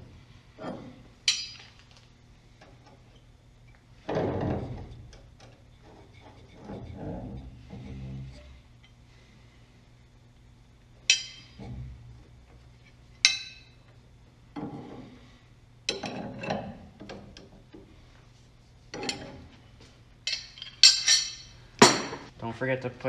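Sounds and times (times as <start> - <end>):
knocks and rattles: 4.0 - 8.6, 11.0 - 12.6
metal tools clinking: 20.3 - 22.3.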